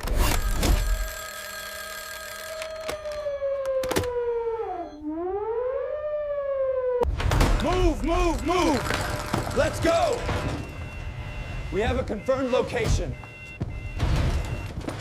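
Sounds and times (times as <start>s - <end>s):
siren wailing: 0.7s - 7.1s.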